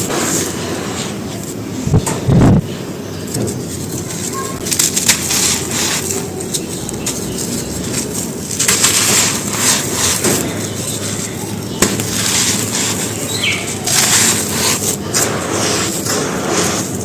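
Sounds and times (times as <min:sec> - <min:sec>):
stone cylinders crunching: 0:03.3 - 0:17.0.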